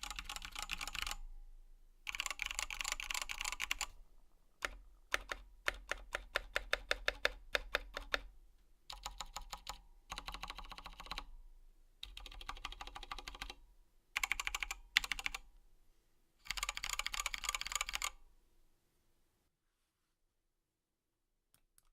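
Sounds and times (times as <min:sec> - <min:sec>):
mechanical keyboard typing: 0:00.0 - 0:01.2, 0:02.1 - 0:04.0, 0:04.6 - 0:08.3, 0:08.9 - 0:11.3, 0:12.0 - 0:13.6, 0:14.2 - 0:15.4, 0:16.5 - 0:18.2.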